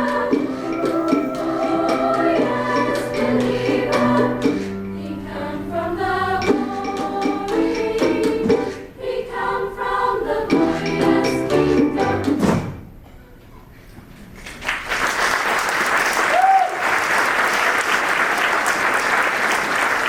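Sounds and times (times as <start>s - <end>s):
women's choir singing: 0.0s - 12.4s.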